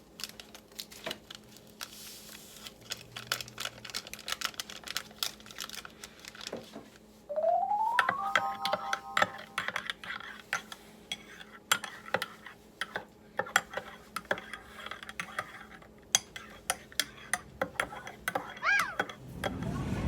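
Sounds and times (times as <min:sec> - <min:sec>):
rising tone: 0:07.3 - 0:09.6, 0:18.7 - 0:20.0
spoon clinking in a mug: 0:08.0 - 0:12.4.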